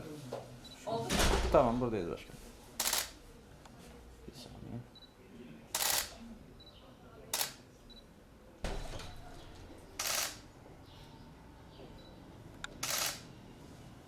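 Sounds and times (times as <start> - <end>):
camera shutter firing: 2.8 - 3.2, 5.8 - 6.2, 7.3 - 7.6, 10.0 - 10.4, 12.8 - 13.3.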